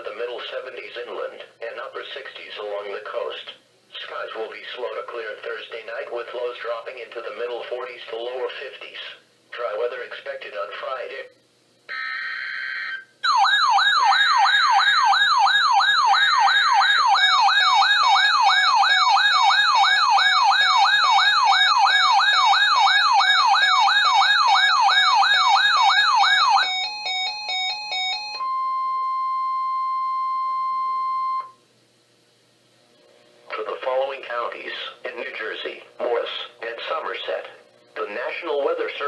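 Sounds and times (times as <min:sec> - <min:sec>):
steady warning tone: 0:11.9 - 0:31.6
warbling electronic alert siren: 0:11.9 - 0:31.6.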